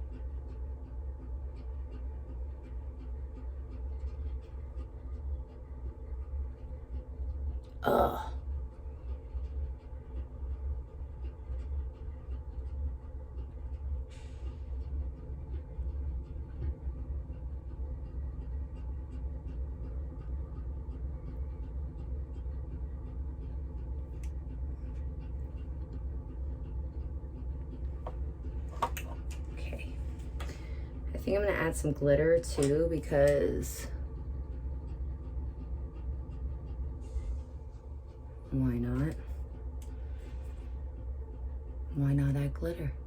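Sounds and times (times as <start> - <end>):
steady low hum: 0.0 - 43.0.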